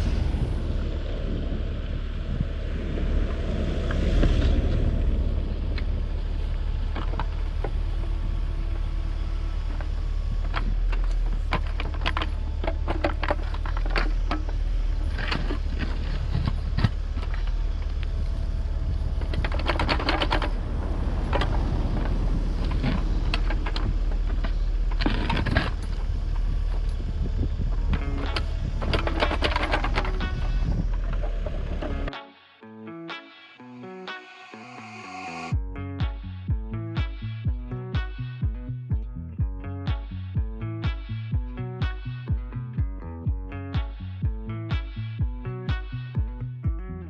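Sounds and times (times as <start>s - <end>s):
diesel engine running: 0.0s - 32.1s.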